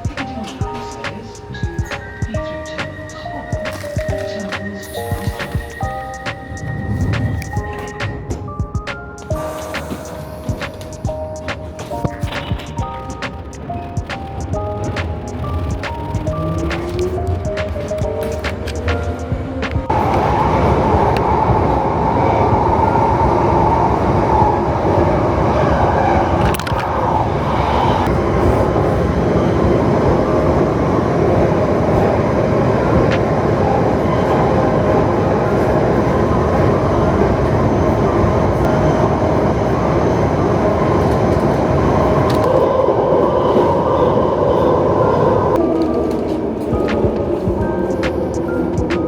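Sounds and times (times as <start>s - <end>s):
train rumbling: 0.0s - 49.0s.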